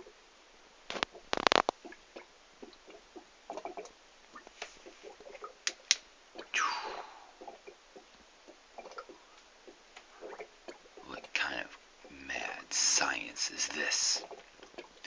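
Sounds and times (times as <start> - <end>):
airlocks bubbling and popping: 0.9 - 13.0, 13.7 - 15.0
falling gurgle: 6.4 - 7.8.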